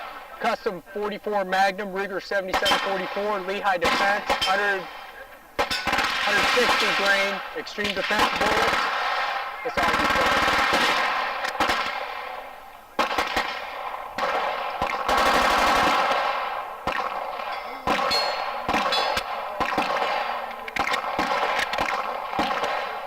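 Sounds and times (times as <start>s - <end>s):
automatic gunfire burst: 2.5s - 23.0s
single gunshots: 2.5s - 23.0s
steel target ringing: 5.6s - 5.9s, 17.4s - 19.5s.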